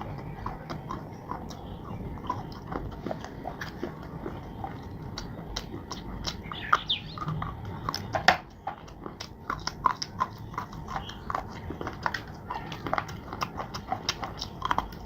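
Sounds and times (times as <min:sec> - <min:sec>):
chewing crunchy clay: 0:00.0 - 0:15.0.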